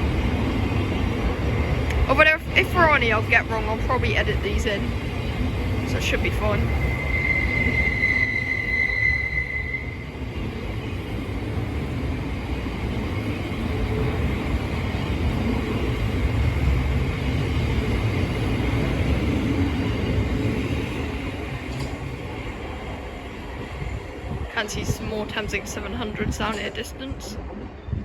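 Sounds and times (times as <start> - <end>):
electric train rumbling: 0.0 - 28.0
high-pitched train squeal: 6.0 - 10.3.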